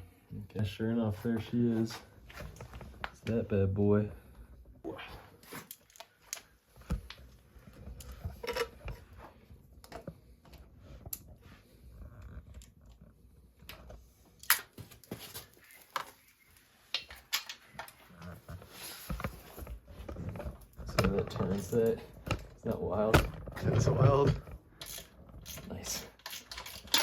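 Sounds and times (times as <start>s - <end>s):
hand tools clicking on metal parts: 24.2s - 27.0s.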